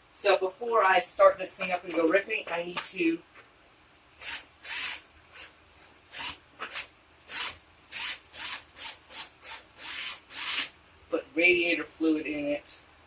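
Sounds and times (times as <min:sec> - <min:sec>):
short hissing strokes: 0:04.2 - 0:10.8.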